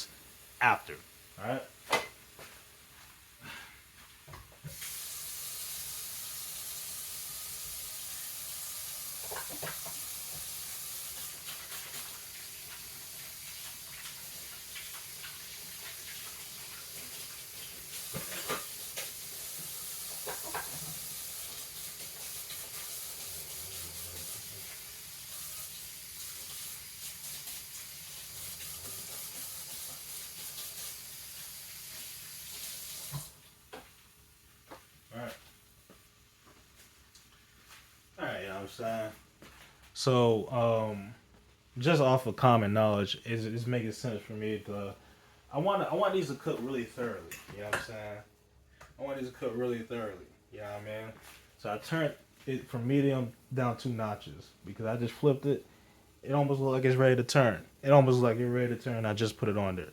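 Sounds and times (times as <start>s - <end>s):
sink tap running: 4.6s - 33.4s.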